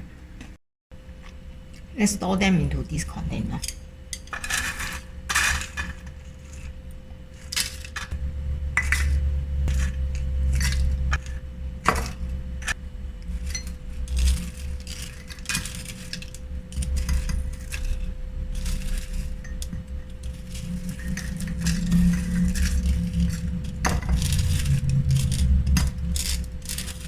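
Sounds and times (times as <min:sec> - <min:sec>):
spoon scraping dried fish: 0:12.0 - 0:27.0.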